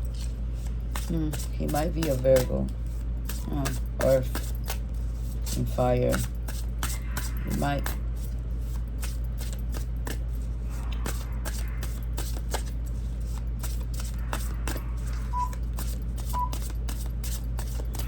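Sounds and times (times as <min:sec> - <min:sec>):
steady low hum: 0:00.0 - 0:18.0
cards clicking and flicking: 0:00.1 - 0:04.8, 0:11.0 - 0:18.0.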